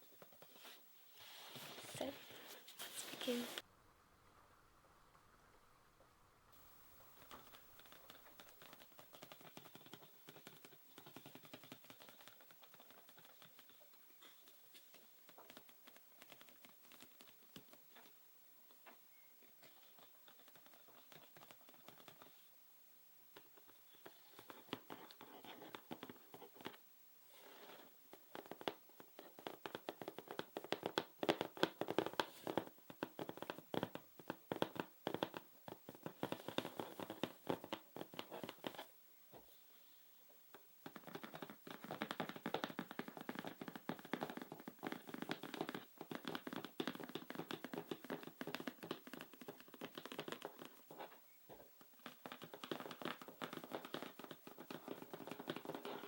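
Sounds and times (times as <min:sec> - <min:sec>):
hands tapping and scratching objects: 0:00.0 - 0:00.8, 0:06.9 - 0:22.5, 0:23.3 - 0:26.8, 0:27.4 - 0:39.5, 0:40.5 - 0:56.0.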